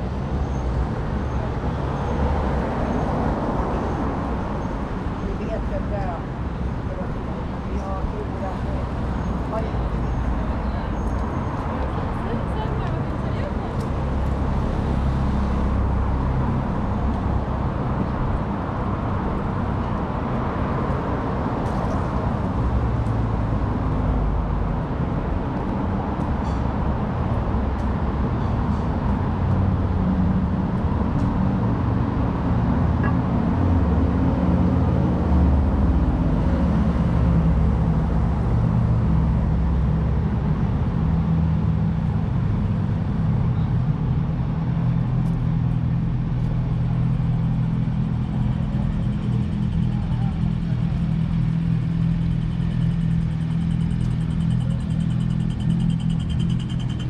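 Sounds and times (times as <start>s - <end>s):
cars driving past: 0.0s - 57.0s.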